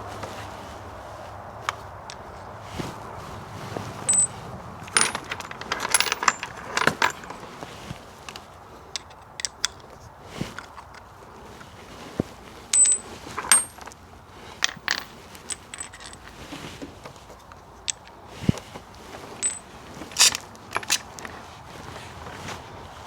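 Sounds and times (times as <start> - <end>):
metal tools clinking: 4.0 - 11.1, 12.7 - 16.6, 17.8 - 18.2, 19.4 - 21.4.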